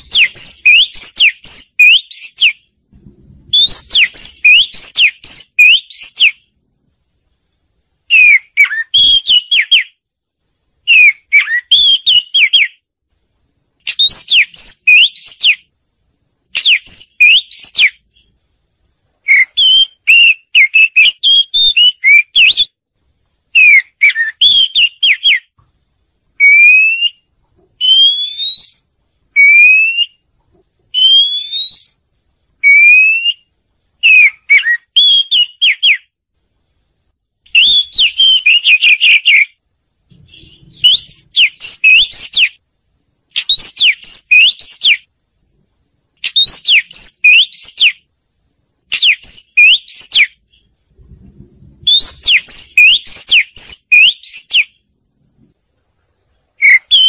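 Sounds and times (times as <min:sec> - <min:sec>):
single rising whistled notes: 0:00.0 - 0:06.3, 0:51.7 - 0:54.7
bird song whistles and trills: 0:00.0 - 0:06.6, 0:08.1 - 0:10.0, 0:10.8 - 0:12.8, 0:13.8 - 0:15.7, 0:16.4 - 0:18.4, 0:19.2 - 0:22.8, 0:23.5 - 0:25.6, 0:26.4 - 0:30.3, 0:30.9 - 0:32.0, 0:32.6 - 0:36.2, 0:37.5 - 0:42.6, 0:43.3 - 0:45.1, 0:46.2 - 0:48.1, 0:48.9 - 0:54.9, 0:56.6 - 0:57.0.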